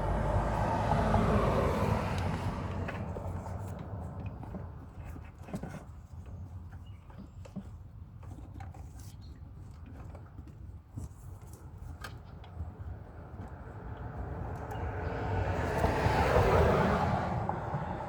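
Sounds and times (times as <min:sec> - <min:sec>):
low steady rumble: 0:00.0 - 0:01.3.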